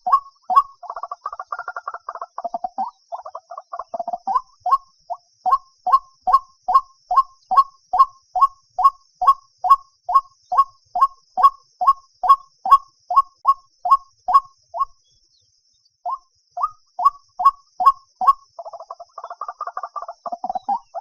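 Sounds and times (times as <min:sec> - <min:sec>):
waterhen calling: 0:00.0 - 0:04.8, 0:16.1 - 0:21.0.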